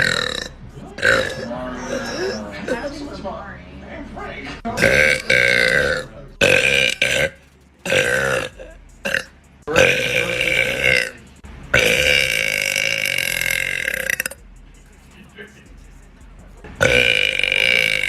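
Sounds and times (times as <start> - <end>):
woman burping loudly: 0.0 - 2.8, 4.8 - 7.3, 16.8 - 18.0.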